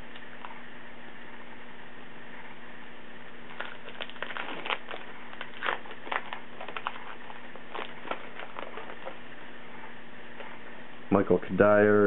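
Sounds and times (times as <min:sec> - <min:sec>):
steady hum: 0:00.0 - 0:12.0
wrapper crinkling and tearing: 0:03.4 - 0:09.2.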